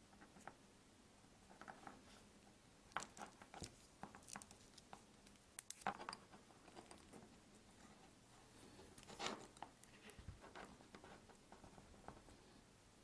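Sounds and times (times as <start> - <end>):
small plastic parts clicking: 2.9 - 7.2.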